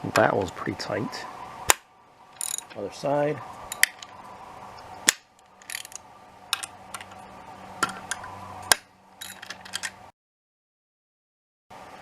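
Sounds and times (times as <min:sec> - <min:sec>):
ratchet wrench clicking: 0:02.4 - 0:02.7, 0:05.6 - 0:06.0
metal tools clinking: 0:02.4 - 0:02.8, 0:03.7 - 0:04.2, 0:05.4 - 0:07.2, 0:09.2 - 0:10.0.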